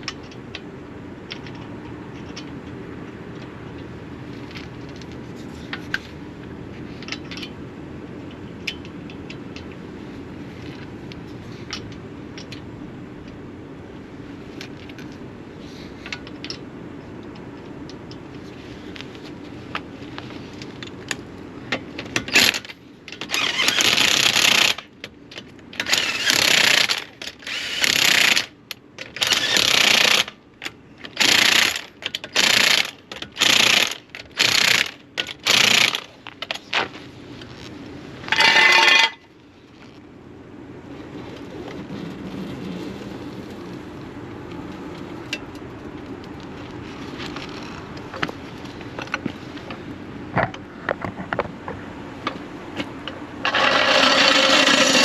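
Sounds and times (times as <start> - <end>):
air impact gun hammering: 32.4 - 36.0.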